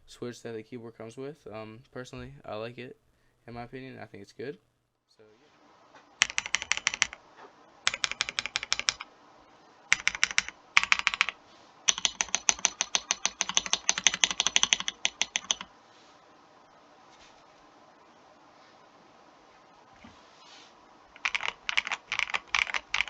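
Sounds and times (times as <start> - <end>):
mechanical keyboard typing: 6.2 - 7.2, 7.8 - 9.1, 9.9 - 15.7, 21.2 - 23.0.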